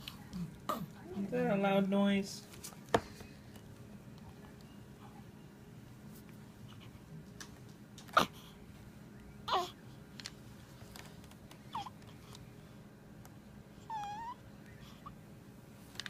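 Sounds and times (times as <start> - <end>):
baby high-pitched coo: 9.5 - 9.8, 11.7 - 12.0, 13.8 - 14.4.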